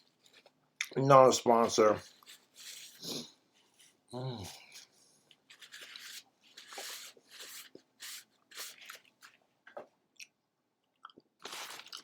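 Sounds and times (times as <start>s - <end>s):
person chewing food: 8.6s - 12.0s.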